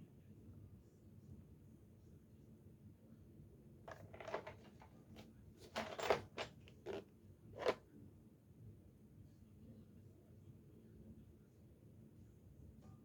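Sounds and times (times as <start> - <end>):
plastic case clicking and knocking: 3.9 - 4.9, 5.7 - 7.0, 7.6 - 7.8.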